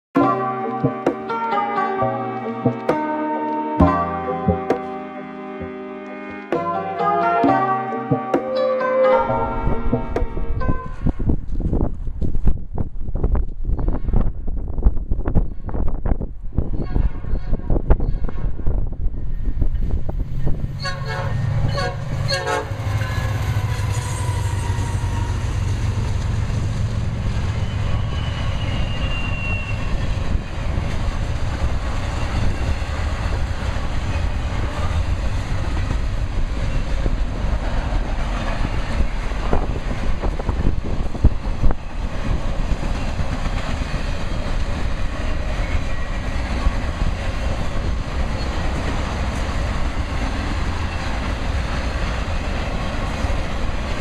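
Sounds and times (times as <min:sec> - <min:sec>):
train horn blasts: 0:00.2 - 0:11.2, 0:16.8 - 0:18.6, 0:20.8 - 0:26.4
train rumble: 0:09.2 - 0:54.0.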